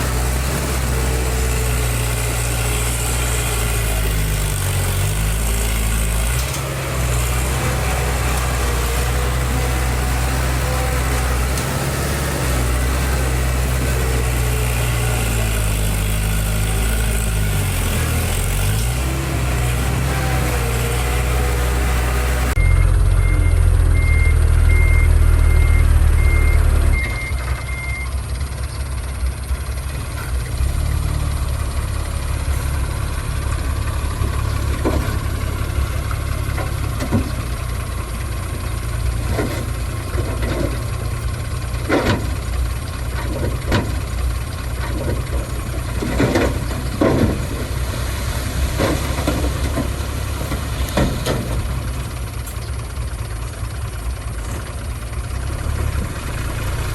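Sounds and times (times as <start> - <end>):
diesel machinery engine: 0.0 - 56.9
reversing alarm beeping: 22.6 - 28.2
metal clanks and knocks: 34.2 - 35.6, 36.4 - 37.7, 39.1 - 47.8, 48.7 - 52.9.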